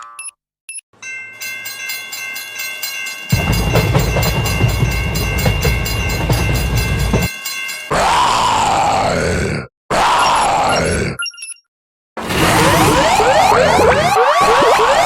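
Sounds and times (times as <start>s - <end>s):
level-crossing alarm ringing: 1.3s - 7.9s
train rumbling past: 3.3s - 7.3s.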